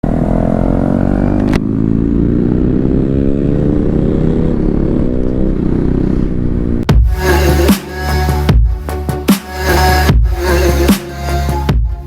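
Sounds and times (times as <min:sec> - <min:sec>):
motorcycle engine revving: 0:00.0 - 0:08.4.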